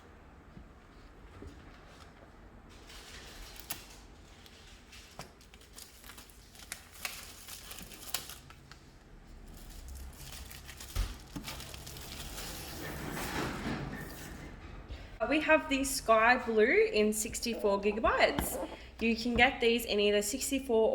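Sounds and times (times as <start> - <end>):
plastic wrap crinkling and tearing: 2.8 - 12.8.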